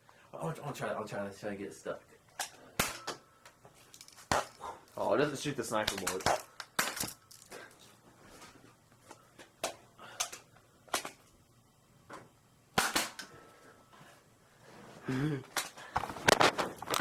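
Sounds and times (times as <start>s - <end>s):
toy blasters firing darts: 2.8s - 3.2s, 12.8s - 13.3s.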